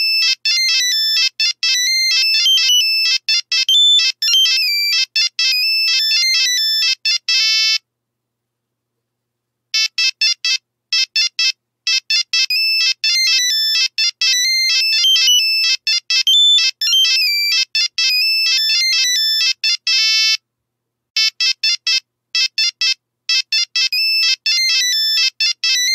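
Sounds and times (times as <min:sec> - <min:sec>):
phone ringtone beeping melody: 0:00.0 - 0:07.8, 0:09.8 - 0:20.4, 0:21.2 - 0:25.9.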